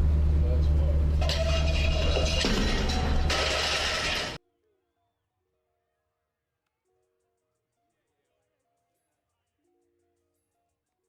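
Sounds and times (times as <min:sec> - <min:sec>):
faint music: 0:04.4 - 0:11.0.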